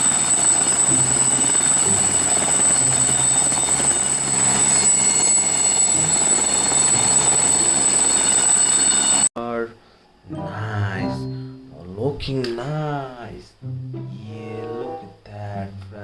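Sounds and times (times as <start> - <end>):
helicopter engine and rotor: 0.0 - 9.3
high steady whine: 0.0 - 9.3.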